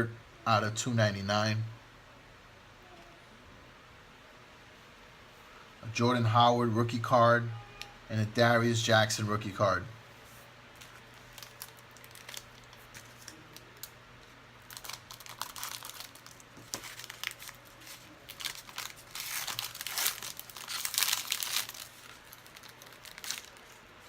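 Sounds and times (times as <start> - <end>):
foil wrapper crinkling and tearing: 10.8 - 24.0.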